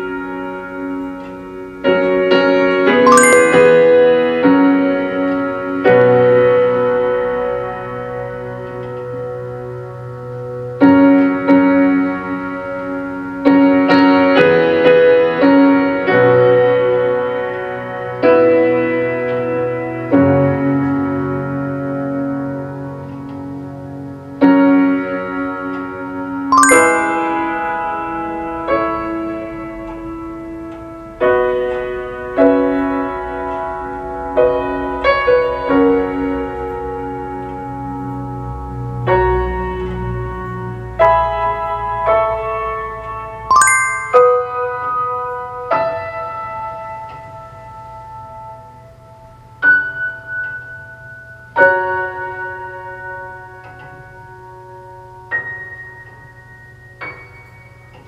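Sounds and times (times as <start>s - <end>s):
solo piano through car speakers: 0.0s - 58.0s.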